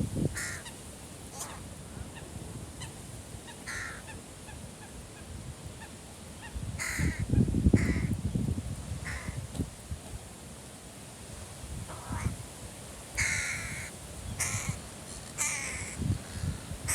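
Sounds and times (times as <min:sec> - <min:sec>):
wind rumble on microphone: 0:00.0 - 0:00.6, 0:05.3 - 0:10.3, 0:11.4 - 0:12.6, 0:13.2 - 0:16.9
crows cawing: 0:00.4 - 0:01.7, 0:03.6 - 0:04.2, 0:06.8 - 0:08.2, 0:09.0 - 0:09.4, 0:11.9 - 0:12.4, 0:13.2 - 0:16.9.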